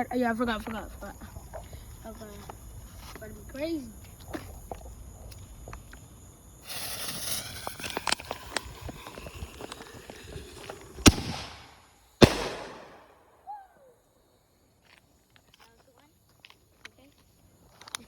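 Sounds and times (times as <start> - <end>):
firework hissing and crackling: 1.4 - 13.3
firework pops: 6.6 - 13.2
loud firework bangs: 6.6 - 13.5.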